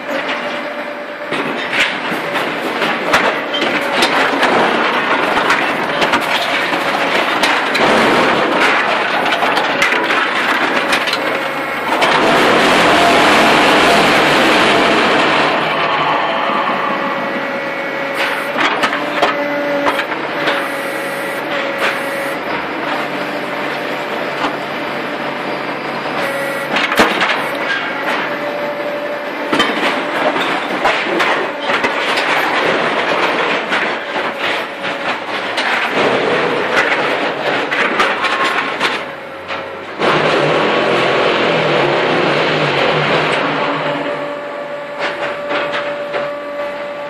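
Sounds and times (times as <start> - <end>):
sharp metal knocks and clatters: 0.0 - 15.6, 26.2 - 41.0
block machine mechanical din: 0.0 - 47.0
machine tone: 10.8 - 31.8, 43.6 - 47.0.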